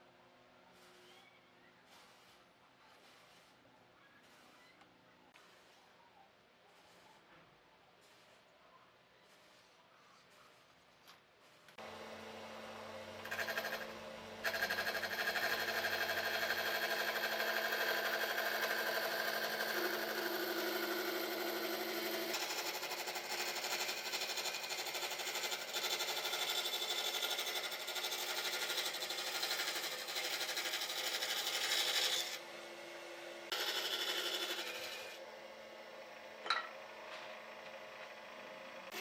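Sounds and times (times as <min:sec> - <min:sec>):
woodworking power tool whining: 0:11.8 - 0:36.3, 0:37.1 - 0:39.0.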